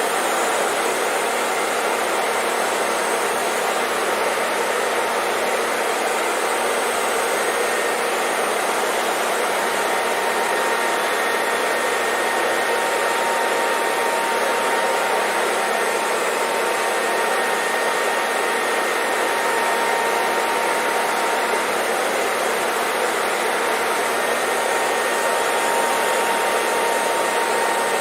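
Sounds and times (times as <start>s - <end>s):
hair dryer blowing: 0.0s - 28.0s.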